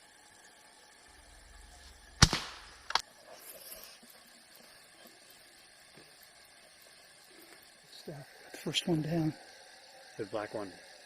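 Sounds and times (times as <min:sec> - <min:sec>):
air rifle shot: 0:02.2 - 0:03.0.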